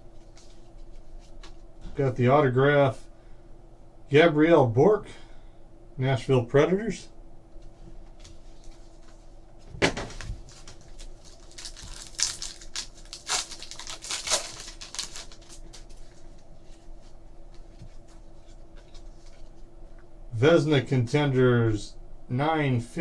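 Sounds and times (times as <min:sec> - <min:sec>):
faint hum: 0:00.0 - 0:23.0
wrappers crinkling and rustling: 0:08.1 - 0:09.3, 0:10.0 - 0:19.6.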